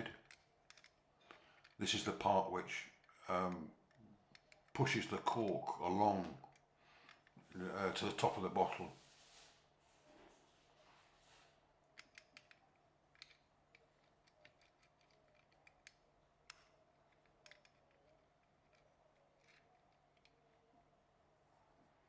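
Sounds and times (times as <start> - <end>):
small metal parts clicking: 0.0 - 1.8, 3.0 - 5.6, 6.4 - 7.4, 11.9 - 20.6.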